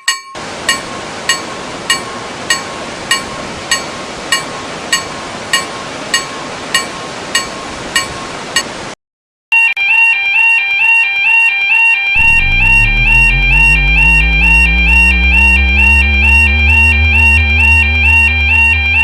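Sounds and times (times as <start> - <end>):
warbling alarm tone: 12.2 - 19.0.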